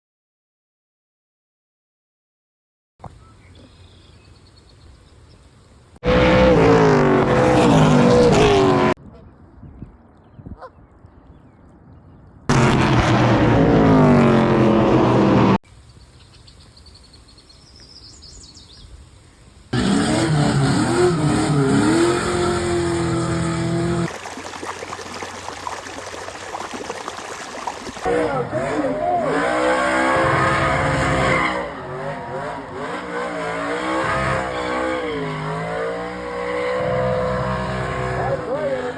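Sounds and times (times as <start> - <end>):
race car engine revving: 6.0 - 9.0, 19.7 - 24.1, 28.1 - 38.9
rough crackling engine run: 12.5 - 15.6.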